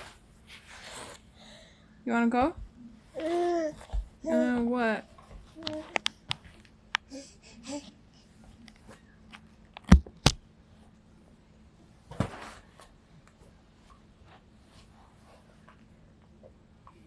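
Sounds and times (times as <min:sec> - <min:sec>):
room handling noise: 0:11.9 - 0:15.9.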